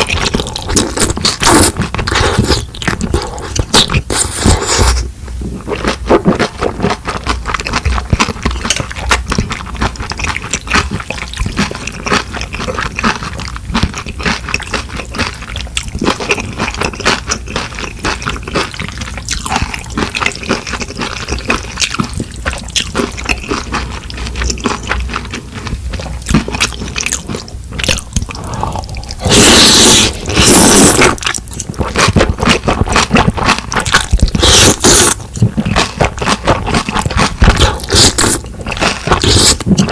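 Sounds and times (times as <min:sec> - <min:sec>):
slurping noodles: 0:00.0 - 0:06.8, 0:28.2 - 0:39.9
wet chewing: 0:00.0 - 0:39.9.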